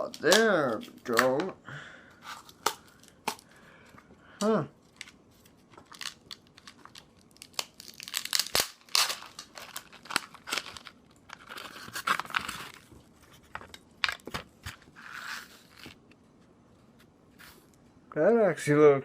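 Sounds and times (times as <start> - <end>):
plastic packet crinkling: 4.8 - 15.0
dry noodles snapping: 5.8 - 9.9.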